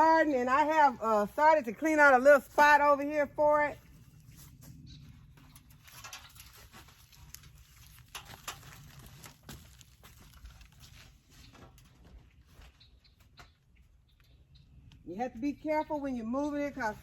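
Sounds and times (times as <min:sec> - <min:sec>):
faint footsteps: 0:03.7 - 0:13.4
rustling: 0:03.9 - 0:13.0.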